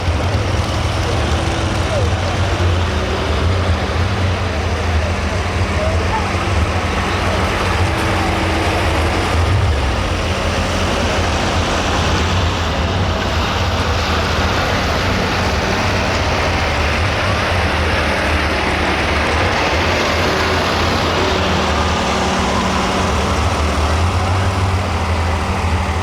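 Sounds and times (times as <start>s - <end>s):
truck engine running loud: 0.0s - 26.0s.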